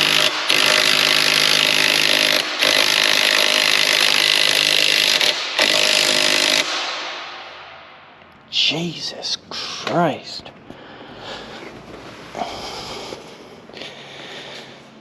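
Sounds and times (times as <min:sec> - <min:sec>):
impact wrench hammering: 0:00.0 - 0:07.7.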